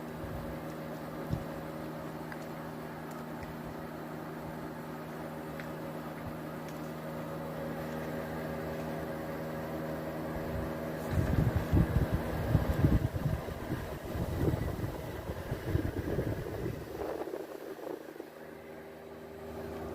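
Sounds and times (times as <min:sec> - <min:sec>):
air conditioner humming: 0:00.0 - 0:19.9.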